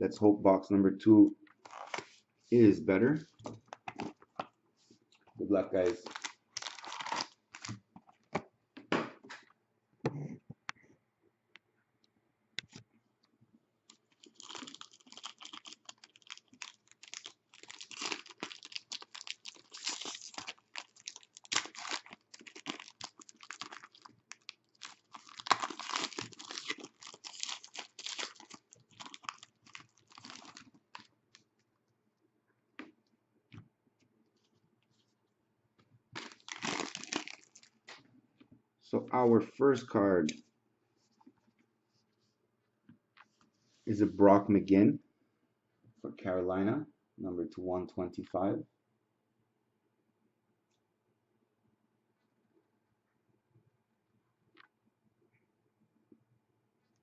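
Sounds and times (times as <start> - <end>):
plastic wrapping tearing and crinkling: 1.6 - 2.0, 5.8 - 7.8, 13.9 - 31.1, 36.2 - 37.8.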